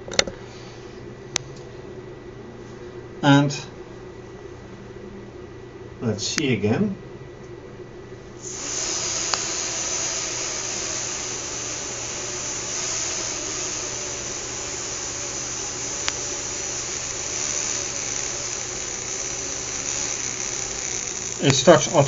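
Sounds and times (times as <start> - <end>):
small motors whirring propellers: 8.4 - 22.0
faint clicks: 16.0 - 16.3.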